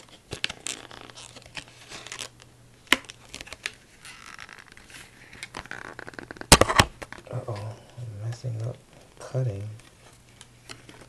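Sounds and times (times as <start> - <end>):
packaging crinkling and rustling: 0.0 - 7.7.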